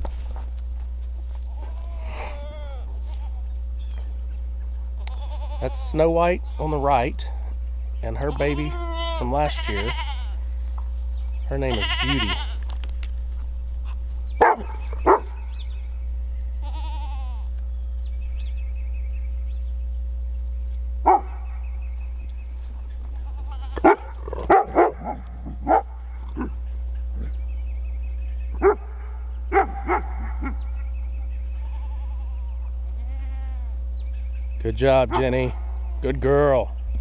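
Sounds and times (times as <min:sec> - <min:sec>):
goat bleating faintly: 0:01.5 - 0:03.6, 0:05.0 - 0:07.5, 0:08.1 - 0:10.6, 0:11.5 - 0:12.8, 0:16.6 - 0:17.6, 0:23.0 - 0:24.4, 0:31.5 - 0:33.9
dogs barking: 0:14.3 - 0:15.8, 0:21.0 - 0:21.8, 0:23.6 - 0:31.4, 0:35.0 - 0:36.1.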